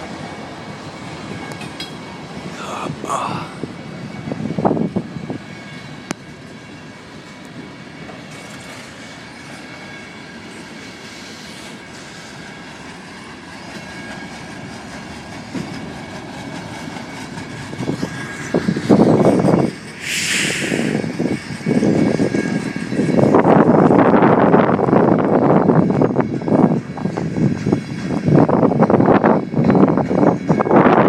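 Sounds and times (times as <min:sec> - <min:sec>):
train wheels rumbling on rails: 0:00.0 - 0:31.0
high wheel squeal: 0:03.8 - 0:31.0.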